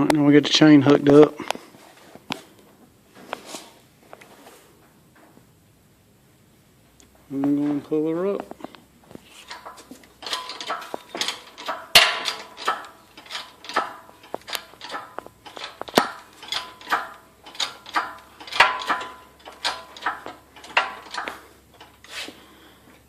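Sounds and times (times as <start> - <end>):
hoist pump metallic clanks: 9.3 - 22.1.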